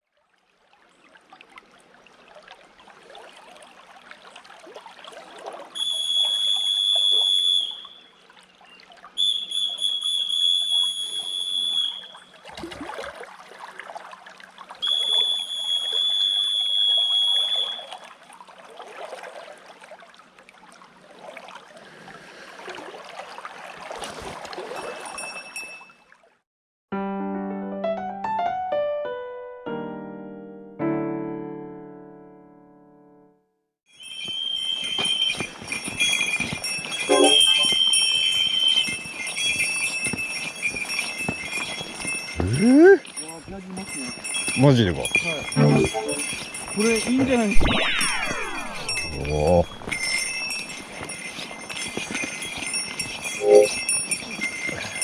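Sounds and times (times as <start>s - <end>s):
river water flowing: 0.1s - 26.4s, 34.0s - 55.0s
high-pitched whistles: 5.8s - 8.0s, 9.2s - 12.2s, 14.8s - 17.9s, 33.9s - 39.9s, 45.2s - 46.4s, 47.6s - 50.6s, 53.2s - 53.9s.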